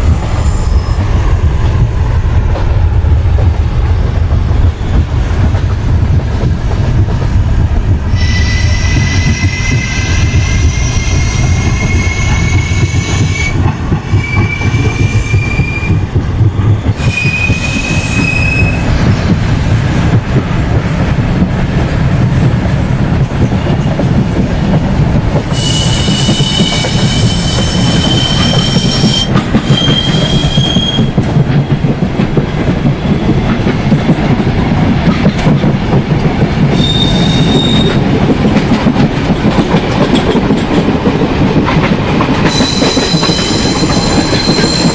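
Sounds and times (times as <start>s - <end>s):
train rumbling on rails: 0.0s - 44.9s
steel wheel squeal: 8.1s - 16.0s, 17.0s - 18.8s, 25.5s - 31.2s, 36.7s - 38.0s, 42.4s - 44.9s.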